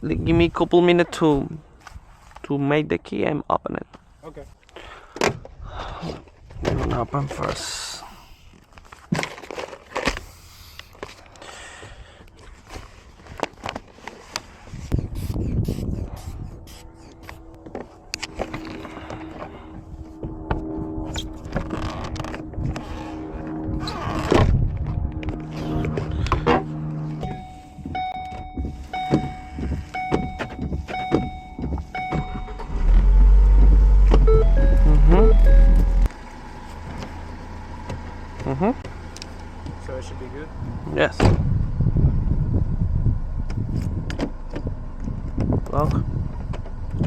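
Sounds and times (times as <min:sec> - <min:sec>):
loud steady low rumble: 0:14.8 - 0:36.2, 0:39.8 - 0:47.0
car electronic warning chime: 0:27.2 - 0:33.3, 0:33.9 - 0:36.1.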